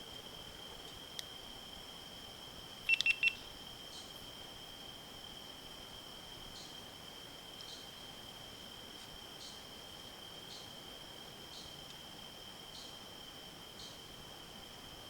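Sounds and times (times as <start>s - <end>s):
crickets trilling: 0.0s - 15.0s
faint background hiss: 0.0s - 15.0s
short high-pitched beeps: 2.9s - 3.4s.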